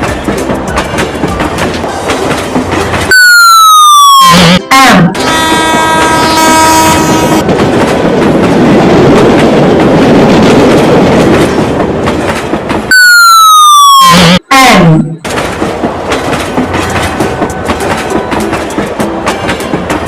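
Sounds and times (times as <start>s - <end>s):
train clickety-clack on rails: 0.0s - 3.8s, 4.5s - 13.2s, 15.1s - 20.0s
loud tone falling in pitch: 3.1s - 5.2s, 12.9s - 15.2s
train horn blast: 3.1s - 7.4s, 12.9s - 15.1s.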